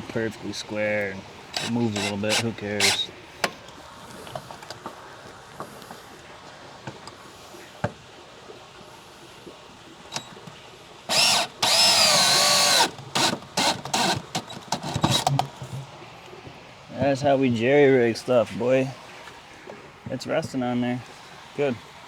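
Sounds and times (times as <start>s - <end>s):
power drill running: 1.5s - 3.1s, 11.1s - 15.3s.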